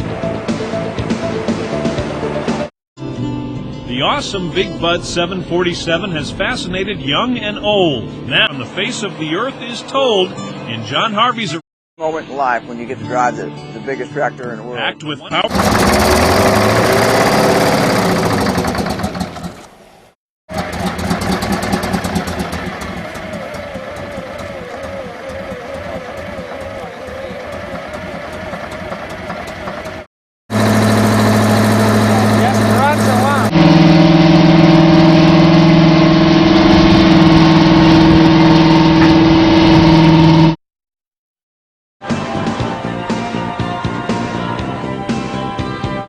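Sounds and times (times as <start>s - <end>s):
tractor diesel engine running: 15.5s - 40.6s.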